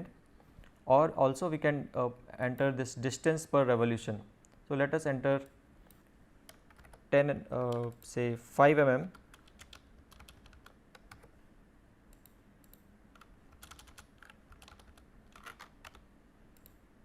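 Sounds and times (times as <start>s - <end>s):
faint keyboard typing: 5.4s - 8.2s, 9.1s - 11.4s, 12.1s - 16.8s.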